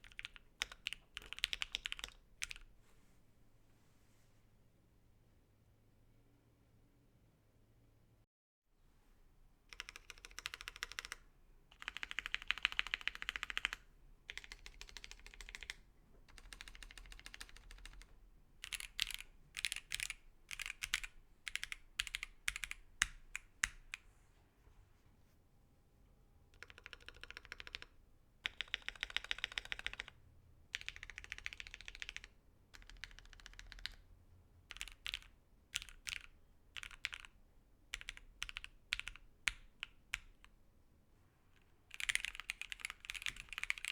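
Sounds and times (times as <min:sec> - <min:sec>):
mechanical keyboard typing: 0:00.0 - 0:02.7, 0:09.7 - 0:24.0, 0:26.6 - 0:34.0, 0:34.7 - 0:40.5, 0:41.9 - 0:43.9.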